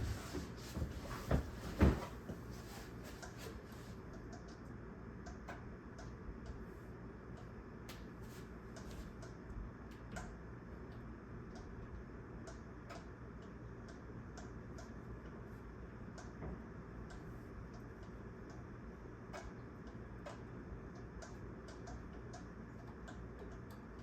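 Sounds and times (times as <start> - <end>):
ceiling fan humming: 0.0 - 24.0
light clicks of fan: 3.1 - 24.0.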